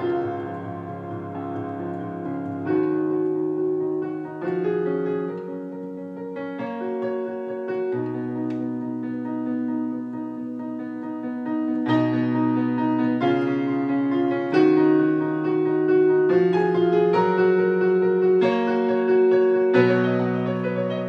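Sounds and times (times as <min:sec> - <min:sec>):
slow piano chords: 0:00.0 - 0:21.0.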